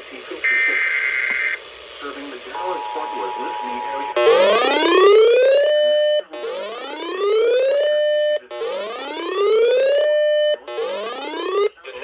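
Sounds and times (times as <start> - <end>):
electronic whoop alarm tone: 2.9 - 11.7.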